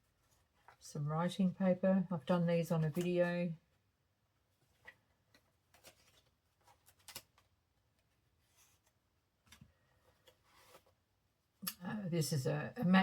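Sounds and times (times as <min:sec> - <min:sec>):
paper rustling and tapping: 0:04.6 - 0:10.9.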